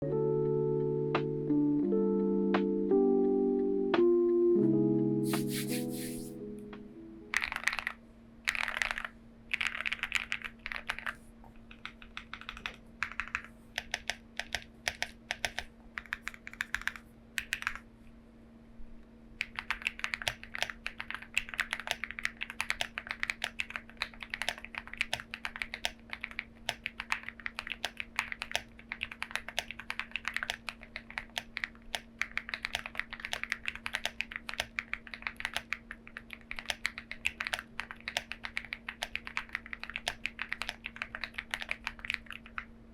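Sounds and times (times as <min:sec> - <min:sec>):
faint steady hum: 0:06.3 - 0:42.9
mechanical keyboard typing: 0:07.3 - 0:17.8, 0:19.4 - 0:42.7.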